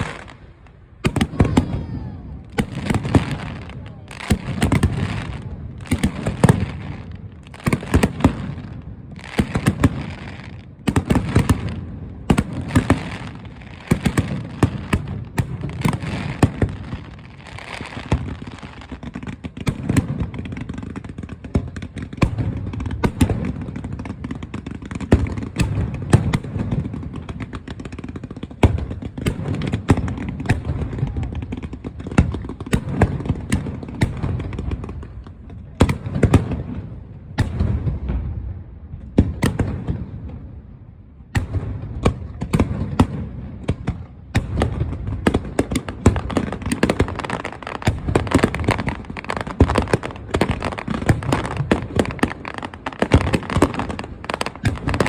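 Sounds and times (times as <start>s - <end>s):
aerial fireworks banging: 1.0s - 18.5s, 41.3s - 55.0s.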